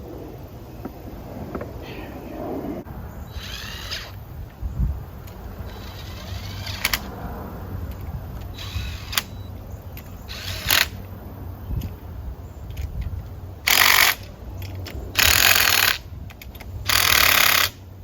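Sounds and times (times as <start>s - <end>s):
power tool whirring: 3.3s - 4.2s, 5.6s - 7.1s, 8.4s - 9.4s, 10.2s - 11.0s, 13.7s - 14.3s, 15.1s - 17.8s
sharp clicks: 5.2s - 7.1s, 7.9s - 11.1s, 12.7s - 17.8s.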